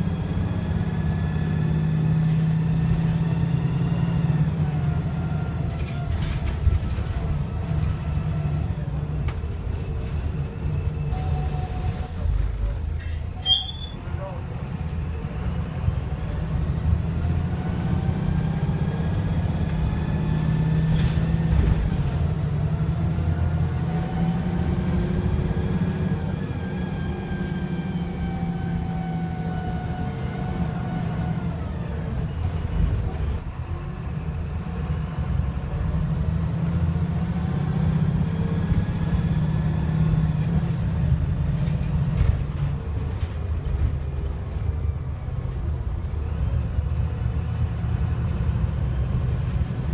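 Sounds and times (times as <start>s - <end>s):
bus diesel engine accelerating: 0.0s - 49.9s.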